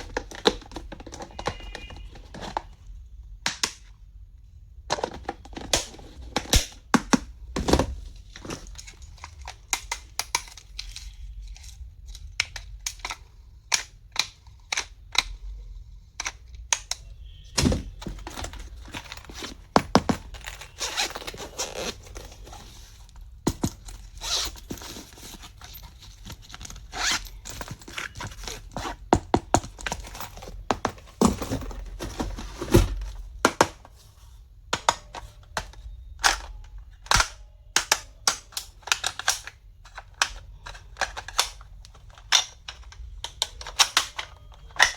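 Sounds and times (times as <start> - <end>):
small plastic parts clicking: 8.7 - 15.5, 34.7 - 44.9.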